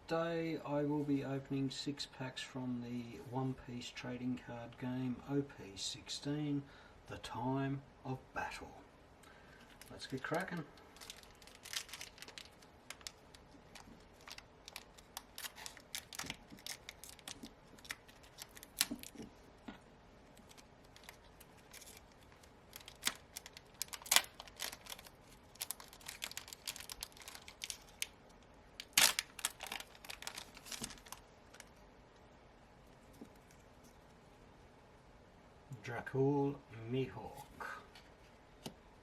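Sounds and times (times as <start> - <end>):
cards being handled: 9.6 - 19.4, 28.8 - 31.7
wrappers crinkling and tearing: 9.6 - 19.4, 20.3 - 28.2, 28.8 - 31.8.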